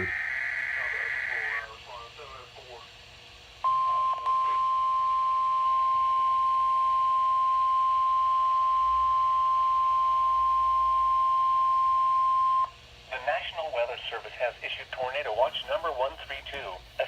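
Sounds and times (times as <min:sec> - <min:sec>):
steady alarm tone: 0:00.0 - 0:01.6, 0:03.7 - 0:12.7.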